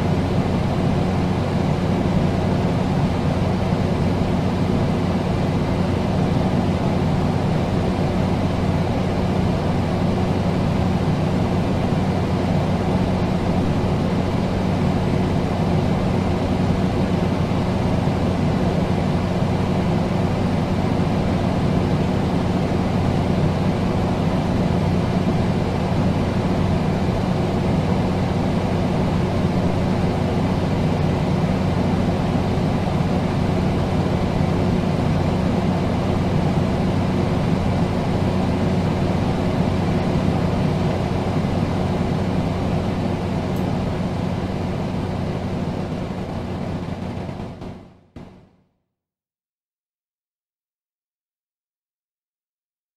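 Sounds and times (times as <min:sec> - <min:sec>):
air conditioner running: 0:00.0 - 0:48.4.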